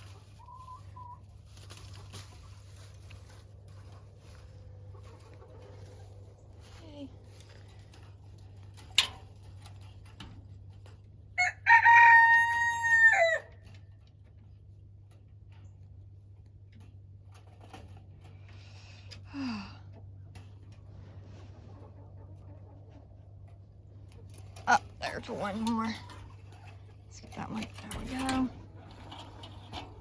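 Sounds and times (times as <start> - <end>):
rooster crowing: 11.4 - 13.5.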